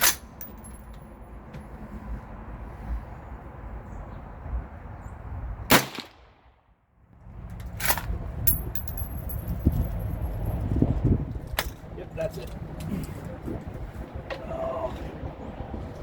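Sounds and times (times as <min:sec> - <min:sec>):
rifle shot: 0:05.7 - 0:06.5.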